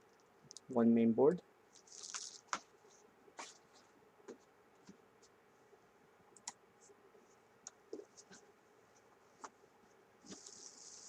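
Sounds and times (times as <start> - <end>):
small parts clicking and scratching: 10.3 - 11.0.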